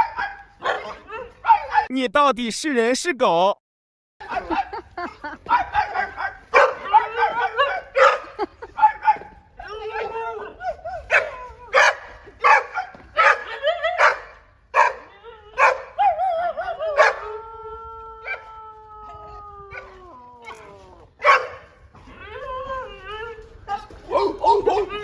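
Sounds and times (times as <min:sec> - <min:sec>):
dog barking: 0:00.0 - 0:01.9, 0:04.2 - 0:09.3, 0:09.9 - 0:17.3, 0:21.2 - 0:21.8, 0:24.1 - 0:25.0
dog yowling: 0:00.0 - 0:01.9, 0:05.5 - 0:25.0
dog howling: 0:05.5 - 0:08.2, 0:14.8 - 0:25.0.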